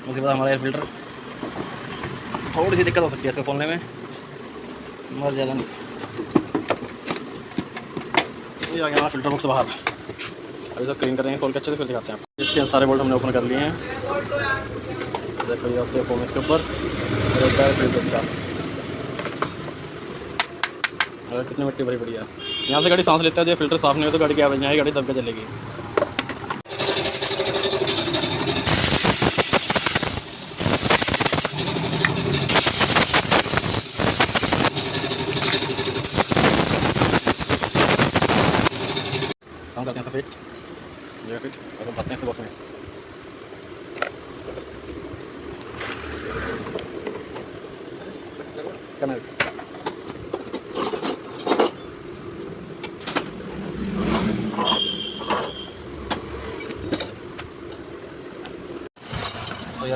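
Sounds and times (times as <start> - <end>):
motor vehicle passing: 1.1 - 4.7, 15.6 - 20.4, 45.5 - 47.6, 52.4 - 55.1, 55.8 - 56.8
rapid crackle: 28.5 - 39.3
compressed air hissing blasts: 28.6 - 31.6, 32.4 - 34.8, 36.0 - 39.3
tools and parts clicking: 49.9 - 51.8, 56.6 - 57.8, 59.1 - 59.9.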